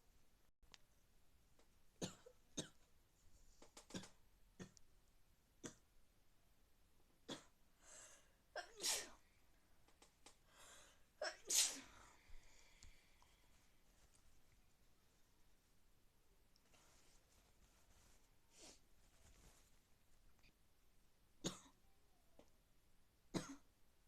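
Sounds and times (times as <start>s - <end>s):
person sneezing: 8.6s - 9.2s, 11.2s - 12.1s.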